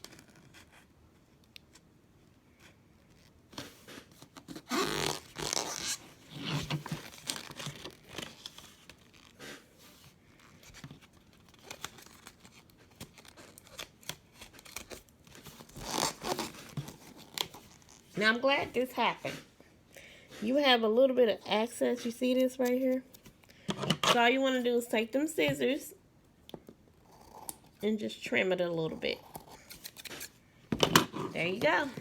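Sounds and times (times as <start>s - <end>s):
small clicks and scratches: 0.0s - 4.6s
rustling and scraping of craft materials: 0.0s - 20.8s, 21.4s - 24.6s, 28.9s - 32.0s.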